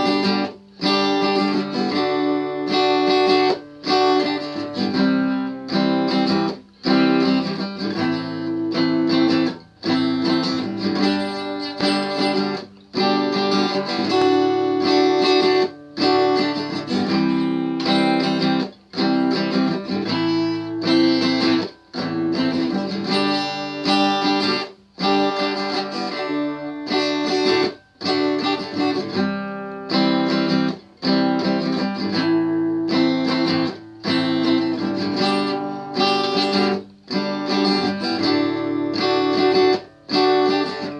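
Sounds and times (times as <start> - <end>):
guitar plucked and strummed: 0.0 - 40.9.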